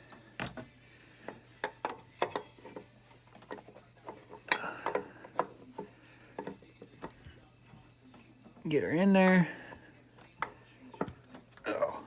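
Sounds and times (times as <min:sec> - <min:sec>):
metal parts and tools clinking: 0:01.6 - 0:07.2.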